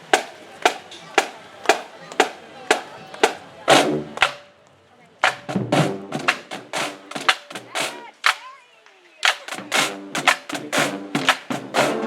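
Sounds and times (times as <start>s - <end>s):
marching drumline beat: 0.0s - 4.4s, 5.2s - 8.4s, 9.2s - 12.0s.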